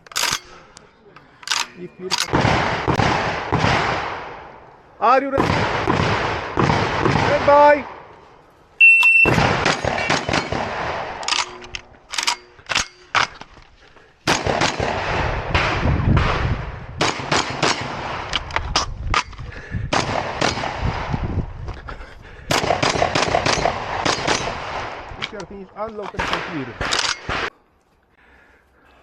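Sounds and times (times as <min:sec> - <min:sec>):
shotgun shots: 0:01.5 - 0:04.5, 0:05.4 - 0:08.0, 0:09.1 - 0:13.3, 0:14.3 - 0:18.3, 0:19.9 - 0:21.2, 0:22.5 - 0:25.1, 0:26.2 - 0:27.5
shot timer beep: 0:08.8 - 0:09.4.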